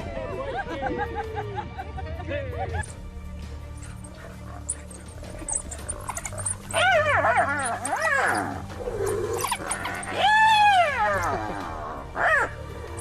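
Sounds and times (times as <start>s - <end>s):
wild dog whining yelps: 3.8s - 13.0s.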